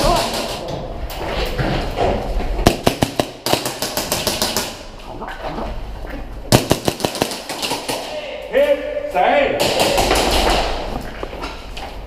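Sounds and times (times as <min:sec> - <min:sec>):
airsoft guns firing: 0:00.0 - 0:00.6, 0:02.6 - 0:04.9, 0:06.5 - 0:08.2, 0:09.6 - 0:10.8.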